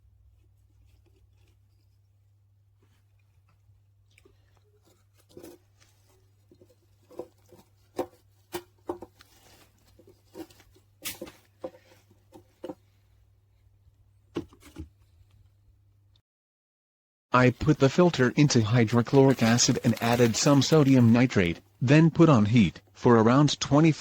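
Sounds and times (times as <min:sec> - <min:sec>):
objects being handled: 0:00.2 - 0:13.1, 0:18.2 - 0:21.8.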